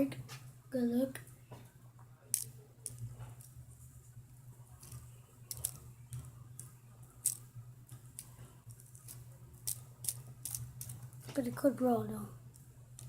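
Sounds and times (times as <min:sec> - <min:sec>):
steady low hum: 0:00.0 - 0:13.0
small objects clicking and scraping: 0:02.2 - 0:11.6, 0:12.4 - 0:13.0.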